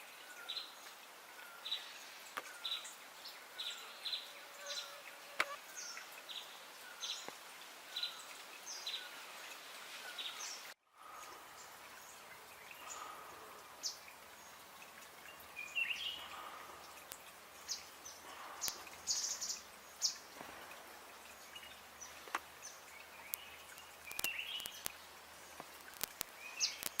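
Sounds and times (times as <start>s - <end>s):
background hiss: 0.0s - 27.0s
small birds chirping: 0.0s - 27.0s
sharp clicks: 23.3s - 25.0s, 25.6s - 27.0s.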